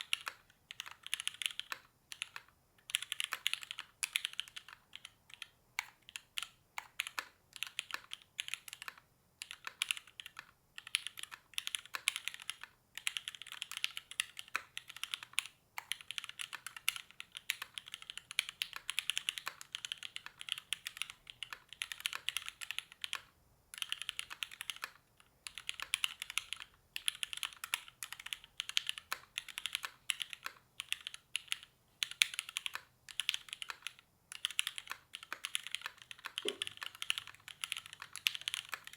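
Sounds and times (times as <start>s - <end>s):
fast mechanical keyboard typing: 0.0s - 38.9s.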